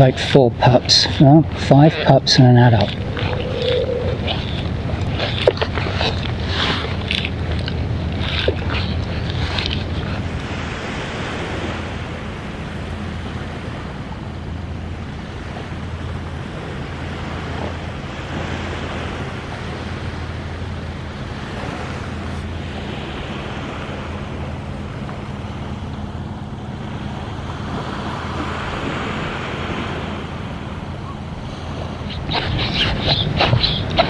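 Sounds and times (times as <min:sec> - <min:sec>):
wind hiss: 0:00.0 - 0:11.8
distant engine hum: 0:00.0 - 0:34.0
small waves on shore: 0:00.0 - 0:34.0.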